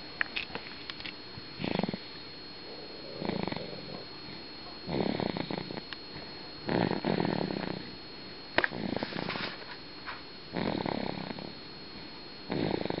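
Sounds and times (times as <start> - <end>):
rattling snores: 1.6 - 2.1, 2.7 - 4.0, 4.9 - 5.8, 6.6 - 7.9, 8.6 - 9.5, 10.5 - 11.6, 12.5 - 13.0.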